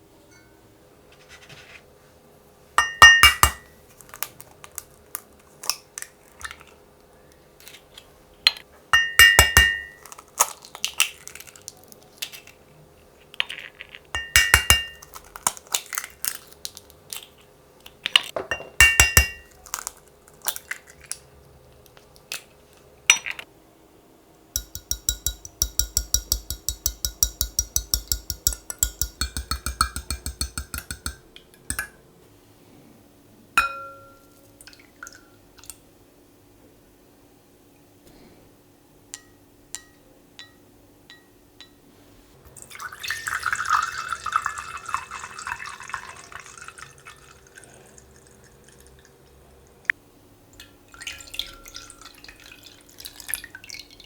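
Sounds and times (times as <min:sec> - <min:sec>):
eggs tapped on bowl rim: 0:02.8 - 0:03.7, 0:09.0 - 0:10.2, 0:14.2 - 0:15.5, 0:18.4 - 0:19.5, 0:24.6 - 0:32.0
eggshell crackle: 0:10.0 - 0:12.6, 0:13.2 - 0:18.3, 0:19.5 - 0:21.2
fork beating eggs in bowl: 0:24.6 - 0:31.9.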